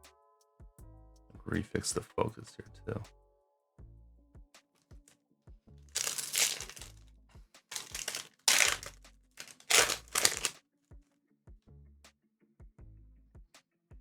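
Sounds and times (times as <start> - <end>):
soft background music: 0.0 - 4.6
foil wrapper crinkling: 6.0 - 6.9, 7.7 - 10.6.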